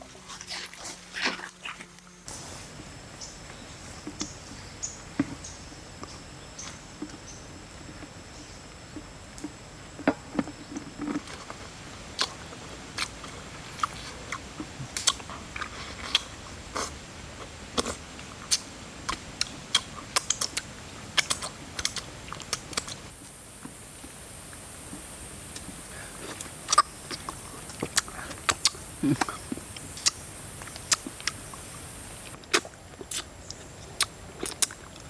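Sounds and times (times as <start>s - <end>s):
steady high hiss: 2.3s - 15.6s, 16.2s - 35.0s
sharp crunches and snaps: 14.9s - 35.0s.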